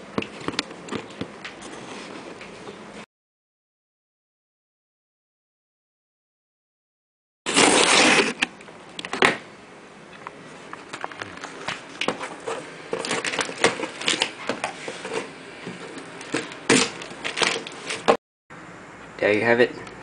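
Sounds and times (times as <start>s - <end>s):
packaging rustling: 10.9s - 18.2s.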